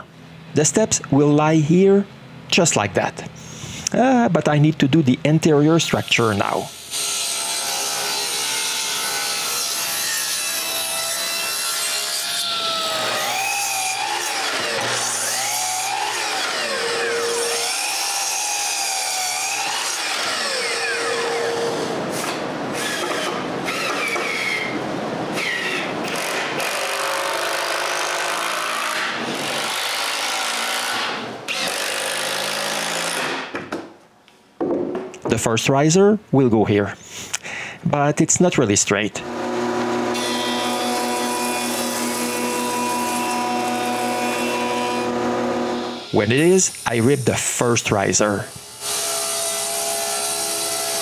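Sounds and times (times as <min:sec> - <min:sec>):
power saw cutting wood: 0:05.9 - 0:33.5, 0:39.2 - 0:51.0.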